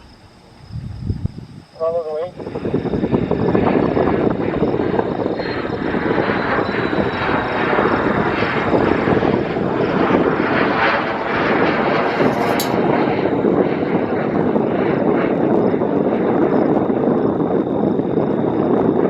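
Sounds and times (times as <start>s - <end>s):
jet engine roar: 0.0s - 19.0s
sharp click: 12.2s - 12.8s.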